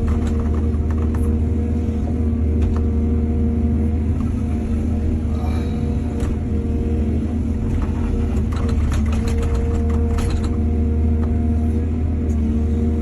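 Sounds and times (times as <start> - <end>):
excavator diesel engine running: 0.0 - 13.0
clattering and rattling: 7.7 - 10.6.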